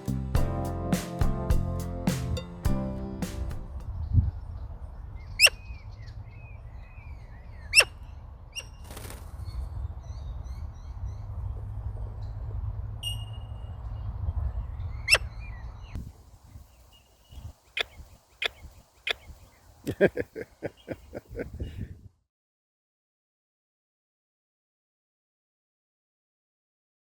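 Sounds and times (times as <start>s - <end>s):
soft bird chirps: 13.0s - 21.7s
sharp bird calls: 16.8s - 21.4s.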